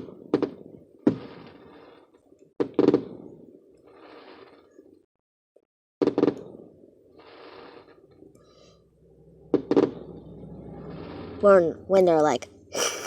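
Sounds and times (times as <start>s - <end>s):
distant firework bursts: 0.0s - 5.1s, 6.0s - 12.8s
rumble: 6.2s - 12.8s.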